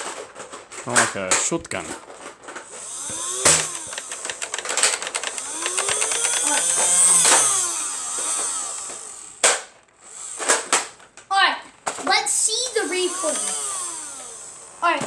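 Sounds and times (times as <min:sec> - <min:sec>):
motor whine: 0:02.7 - 0:11.0, 0:12.1 - 0:15.0
toy blaster firing foam darts: 0:02.7 - 0:11.0, 0:11.8 - 0:15.0
sharp clicks: 0:02.7 - 0:11.3, 0:12.0 - 0:14.6.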